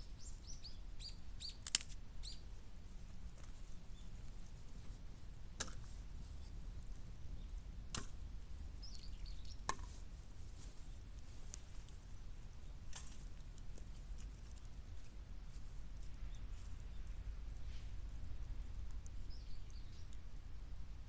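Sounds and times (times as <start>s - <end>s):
bamboo cracking in fire: 1.6s - 2.0s
low steady rumble: 2.0s - 21.0s
bird chirping faintly: 8.8s - 9.7s, 15.5s - 20.3s.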